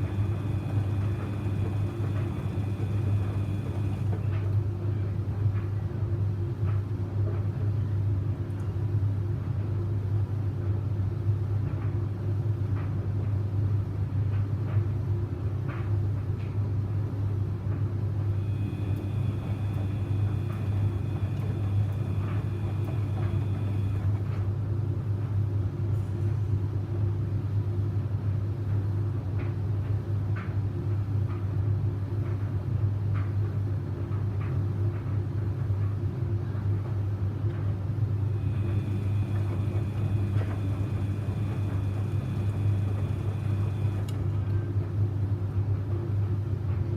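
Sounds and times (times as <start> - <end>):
faint high whine: 0.0 - 4.2, 18.4 - 24.1, 38.3 - 44.2
washing machine motor hum: 0.0 - 10.8, 17.8 - 25.8, 31.5 - 46.9.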